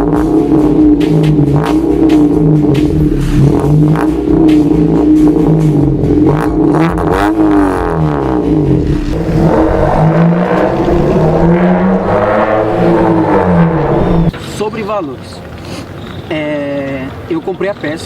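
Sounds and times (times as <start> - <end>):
music: 0.0 - 11.4
loud car engine exhaust: 0.0 - 14.6.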